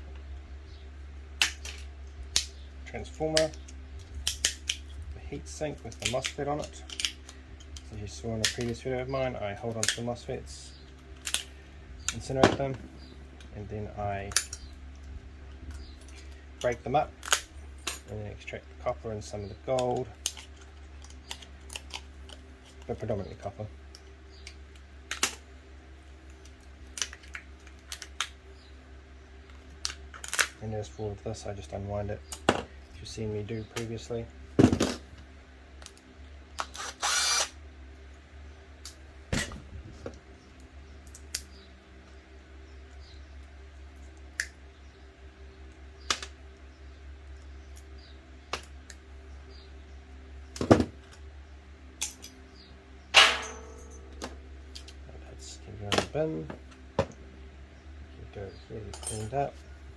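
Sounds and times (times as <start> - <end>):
steady low hum: 0.0 - 59.9
electronic parts clicking and clinking: 58.8 - 59.5.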